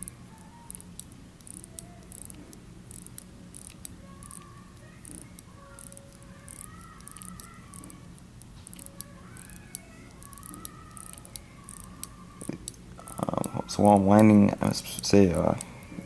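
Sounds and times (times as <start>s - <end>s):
watch winding ratchet clicks: 0.0s - 14.0s.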